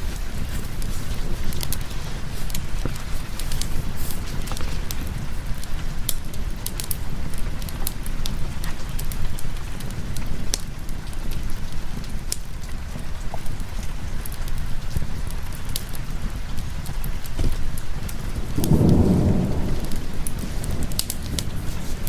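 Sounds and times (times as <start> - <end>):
steady rain: 0.0 - 22.0
fireplace crackling: 16.8 - 22.0
deep low rumble: 18.4 - 21.7.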